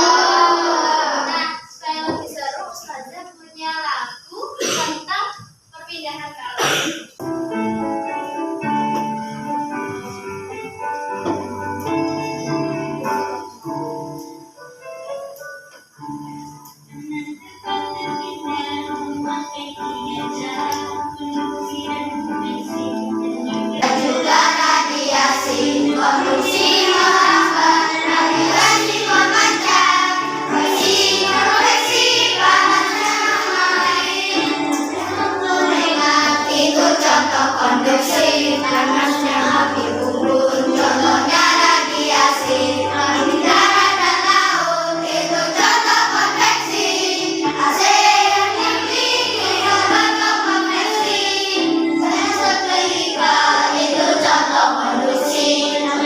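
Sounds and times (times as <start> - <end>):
children singing: 0.0 - 2.4, 17.0 - 56.0.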